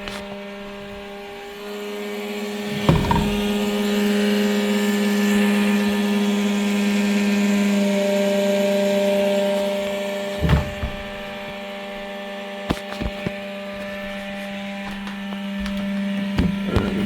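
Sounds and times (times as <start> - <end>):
cooling fan humming loudly: 0.0 - 17.0
sharp clicks and knocks: 2.7 - 3.8, 10.4 - 11.6.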